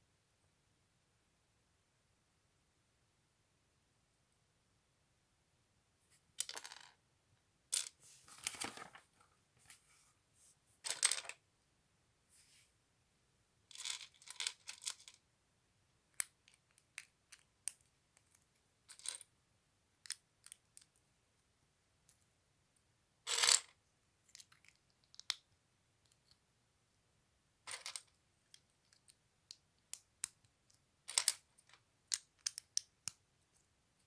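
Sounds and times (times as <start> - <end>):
plastic packaging rustling: 8.3 - 9.1.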